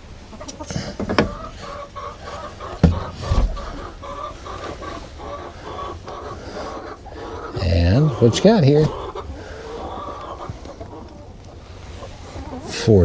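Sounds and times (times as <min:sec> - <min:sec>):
chickens clucking: 0:00.0 - 0:13.0
sharp knocks: 0:02.8 - 0:04.0.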